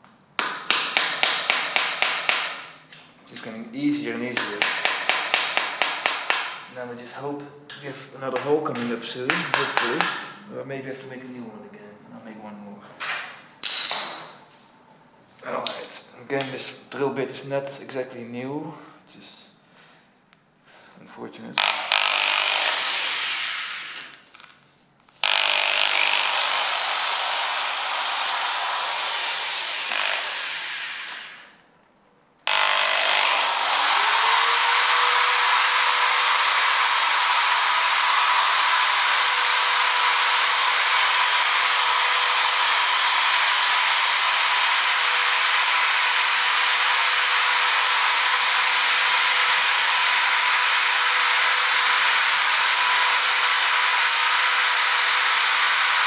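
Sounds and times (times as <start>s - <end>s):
electric drill boring metal: 21.6s - 24.2s, 25.2s - 31.6s, 32.5s - 56.0s.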